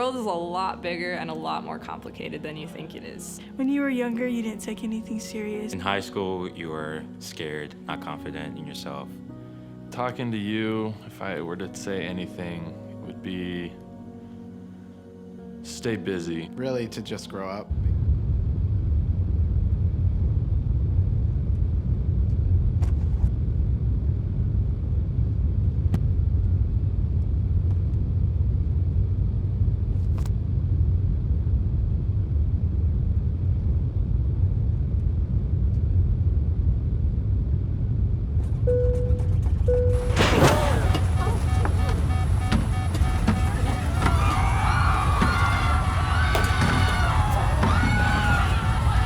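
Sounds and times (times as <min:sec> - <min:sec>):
vehicle engine rumble: 0:28.8 - 0:49.0
short beeps: 0:38.7 - 0:44.3.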